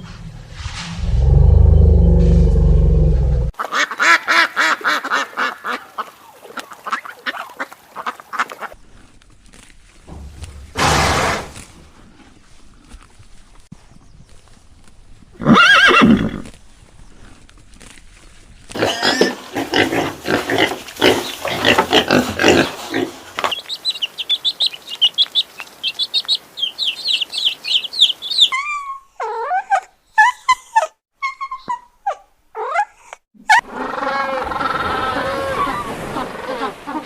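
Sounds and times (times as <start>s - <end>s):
high chirping: 23.4s - 28.8s
animal calls: 23.4s - 37.0s.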